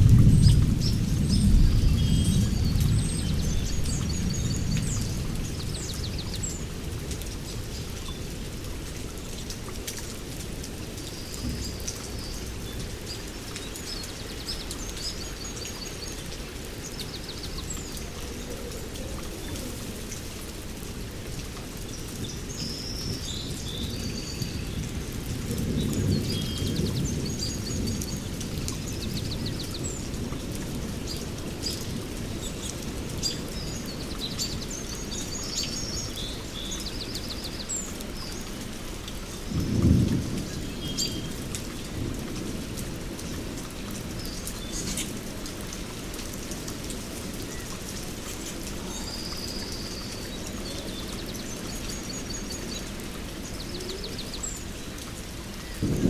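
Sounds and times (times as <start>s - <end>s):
distant thunder rumble: 0.0s - 8.0s, 23.8s - 31.1s, 39.2s - 49.3s, 55.6s - 56.0s
steady rainfall: 0.0s - 56.0s
birds chirping and trilling: 47.4s - 54.8s.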